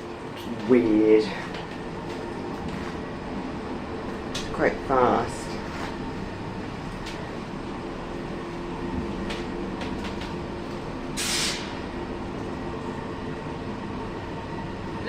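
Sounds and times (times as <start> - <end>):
lift car running hum: 0.0 - 15.0
brief hiss: 11.2 - 11.7.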